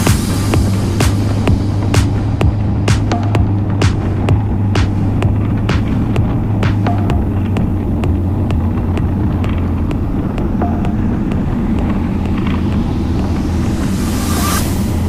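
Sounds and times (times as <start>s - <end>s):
motorcycle engine running: 0.0s - 15.0s
sharp ticking: 0.0s - 15.0s.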